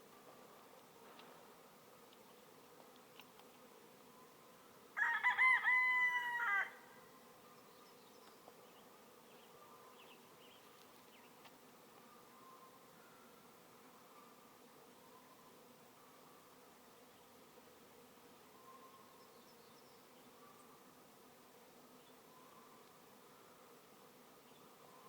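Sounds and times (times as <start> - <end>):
rooster crowing: 5.0 - 7.0.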